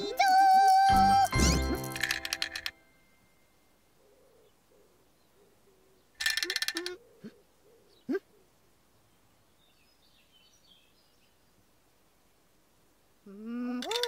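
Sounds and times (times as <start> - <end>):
children's song: 0.0 - 2.7.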